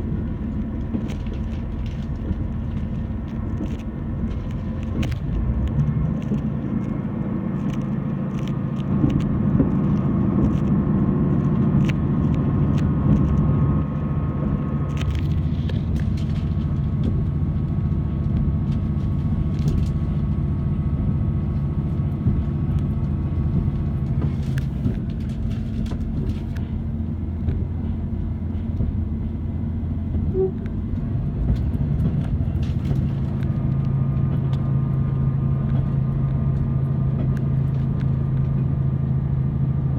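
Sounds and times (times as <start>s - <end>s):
diesel engine drone: 0.0s - 39.9s.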